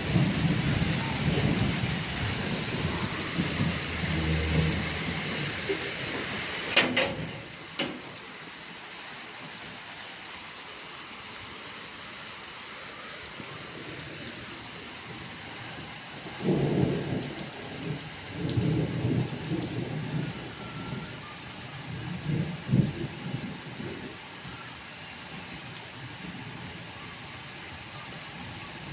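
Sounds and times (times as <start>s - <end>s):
thunder rumbling: 0.0s - 8.3s
heavy rain: 0.0s - 28.9s.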